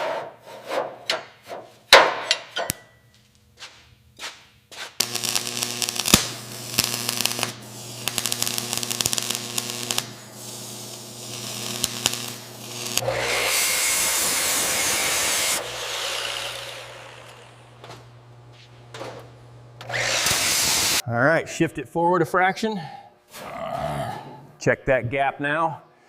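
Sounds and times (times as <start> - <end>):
power tool motor humming: 5.0 - 18.5, 19.8 - 21.0.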